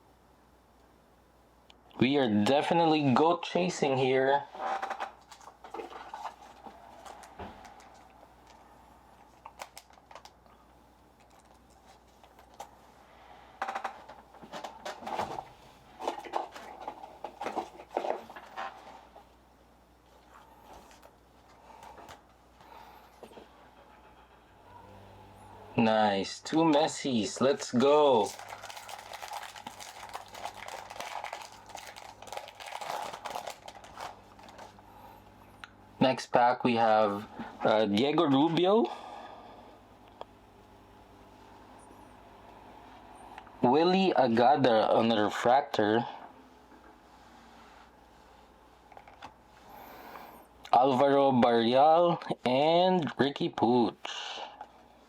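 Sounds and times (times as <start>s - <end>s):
foil wrapper crinkling: 4.8s - 12.8s, 26.5s - 34.8s.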